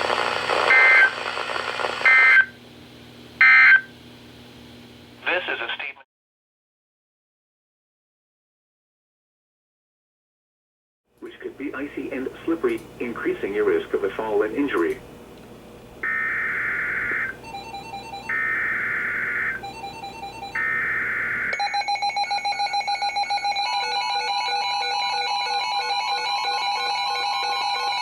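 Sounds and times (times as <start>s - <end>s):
buzzy digital data tones: 0.0s - 2.5s.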